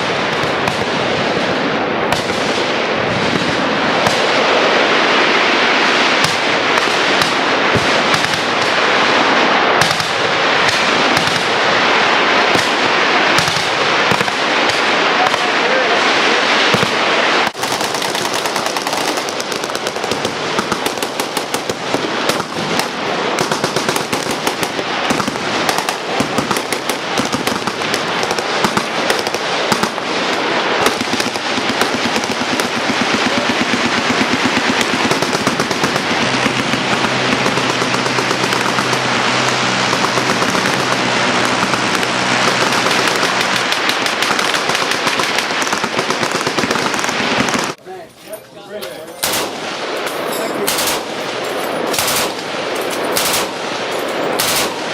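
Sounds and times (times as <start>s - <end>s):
machine guns firing: 0.0s - 15.8s, 16.5s - 47.8s, 49.2s - 54.9s
steady low hum: 32.8s - 45.3s.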